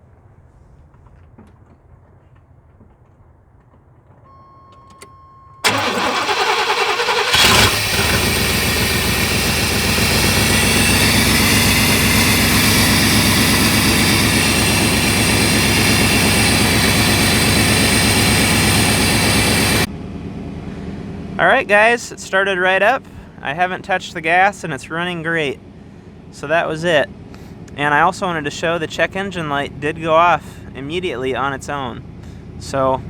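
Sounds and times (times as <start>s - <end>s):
truck engine idling: 3.2s - 21.9s
starter motor cranking: 5.6s - 19.9s.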